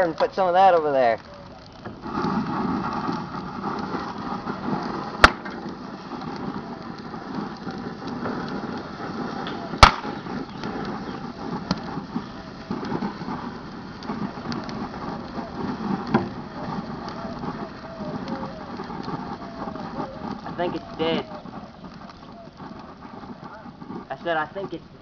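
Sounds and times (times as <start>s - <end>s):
sharp loud pops: 0.0s - 8.8s, 9.4s - 24.8s
microwave burning and crackling: 0.0s - 25.0s.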